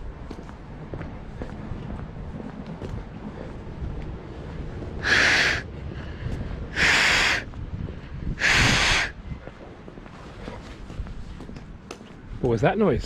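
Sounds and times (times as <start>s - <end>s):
breaths blown into hands: 5.0s - 5.6s.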